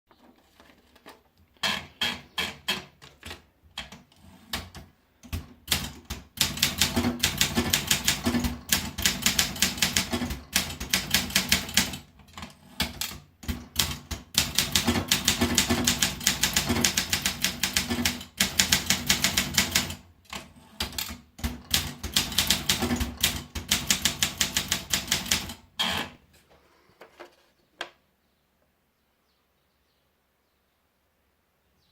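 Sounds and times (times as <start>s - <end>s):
typewriter keystrokes clacking: 1.7s - 26.1s.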